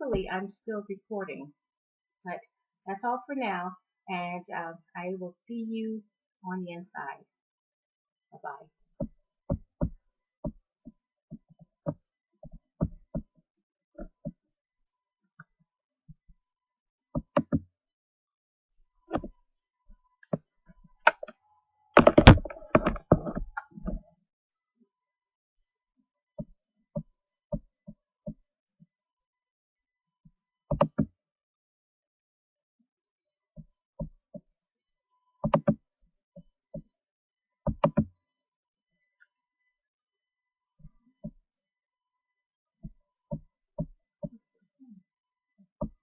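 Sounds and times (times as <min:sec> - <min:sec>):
sharp knocks and clicks: 0:09.0 - 0:10.6, 0:17.2 - 0:17.6, 0:19.1 - 0:19.3, 0:21.1 - 0:21.3, 0:22.0 - 0:24.0, 0:30.7 - 0:31.1, 0:35.4 - 0:35.8, 0:37.7 - 0:38.1
rapid knocks and clatter: 0:22.0 - 0:23.6.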